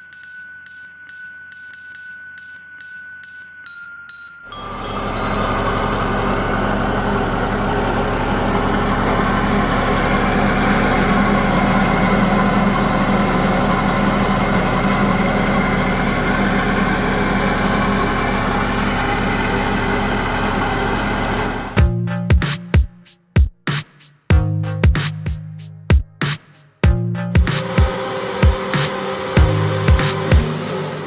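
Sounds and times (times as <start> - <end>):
wood chipper droning: 4.5 - 21.8, 27.3 - 31.0.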